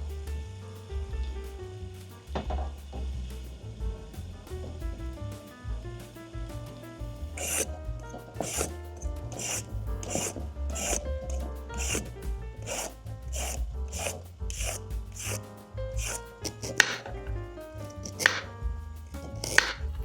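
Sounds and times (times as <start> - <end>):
soft background music: 0.0 - 20.0
rasping strokes: 7.2 - 20.0.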